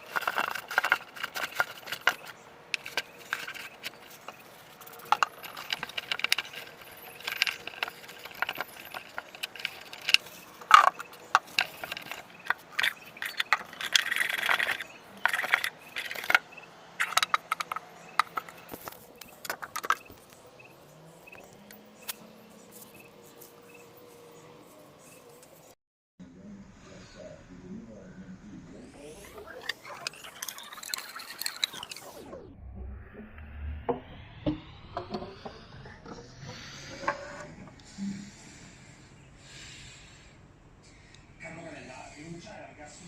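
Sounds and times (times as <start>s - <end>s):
small hard parts clinking: 0.0s - 24.1s, 29.3s - 32.2s.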